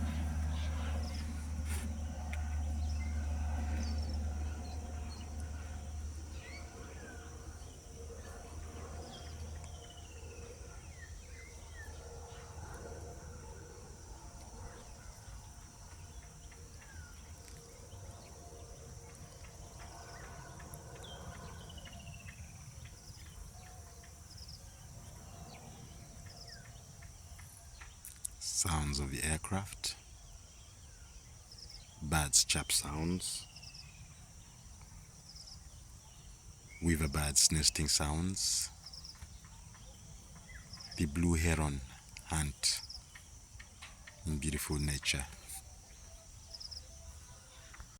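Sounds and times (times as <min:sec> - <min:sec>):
low rumble: 0:00.0 - 0:15.8
birds chirping: 0:00.0 - 0:47.9.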